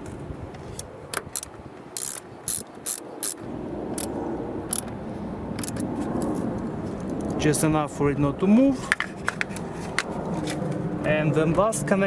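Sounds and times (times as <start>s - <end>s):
hand ratchet clicking: 1.3s - 3.4s, 4.7s - 4.9s.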